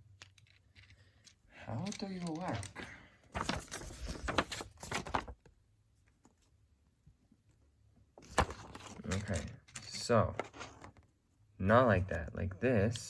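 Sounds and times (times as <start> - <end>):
plastic toy parts clicking: 0.1 - 2.8.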